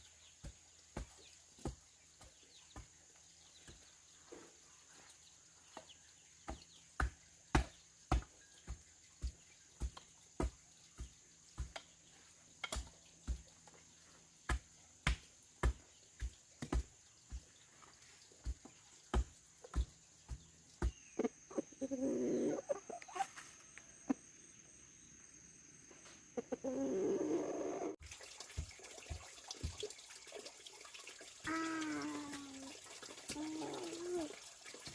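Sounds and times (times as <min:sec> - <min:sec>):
hand tool striking ground: 0:00.2 - 0:03.9, 0:06.5 - 0:21.3.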